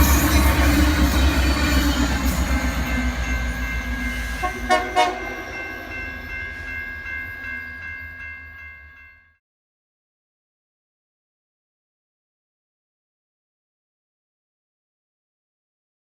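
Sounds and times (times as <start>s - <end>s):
train rumbling past: 0.0s - 9.0s
steady high tones: 0.0s - 9.2s.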